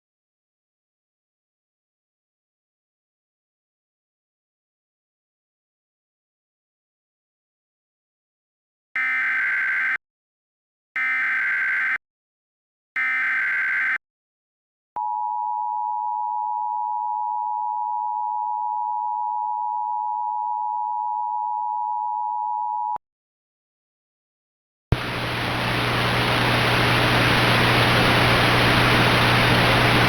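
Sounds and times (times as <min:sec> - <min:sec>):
screechy digital data tones: 0:09.0 - 0:10.0, 0:11.0 - 0:12.0, 0:13.0 - 0:14.0.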